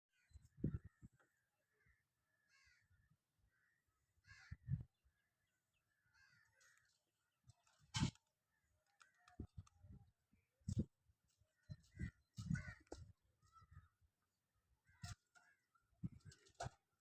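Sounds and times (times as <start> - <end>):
faint short bird calls: 0.1 - 4.9.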